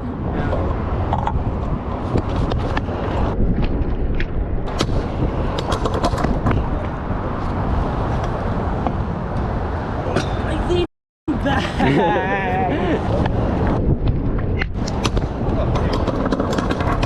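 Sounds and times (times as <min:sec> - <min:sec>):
scooter wheels rolling on concrete: 0:00.2 - 0:09.5, 0:12.9 - 0:17.0
scooter decks knocking on concrete: 0:15.1 - 0:17.0.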